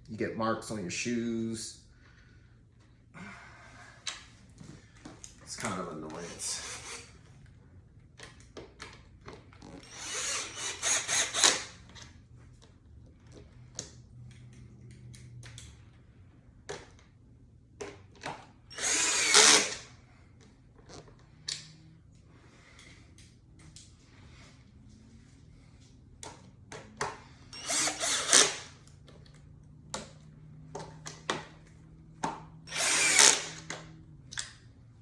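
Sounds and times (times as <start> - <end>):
cordless drill driving screws: 6.2 - 7.1, 9.6 - 11.8, 18.7 - 19.9, 27.5 - 28.7, 32.7 - 33.8.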